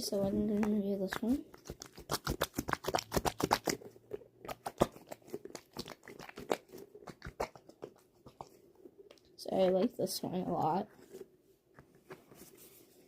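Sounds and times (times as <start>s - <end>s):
squishy toy crackling: 0.5s - 8.5s.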